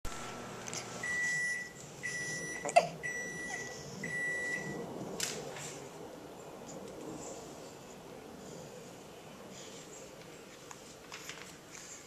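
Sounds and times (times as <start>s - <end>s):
electronic appliance beeps: 1.0s - 4.8s.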